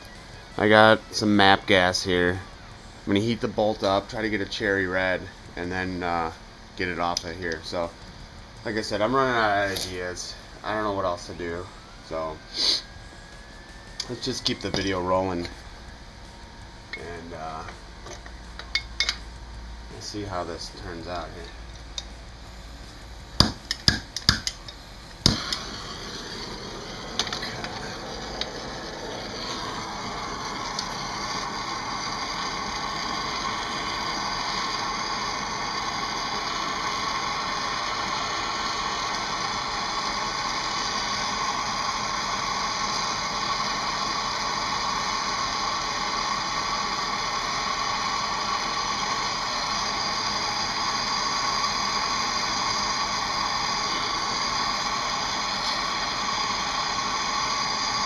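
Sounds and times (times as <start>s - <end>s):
gas torch hissing: 0.0s - 58.0s.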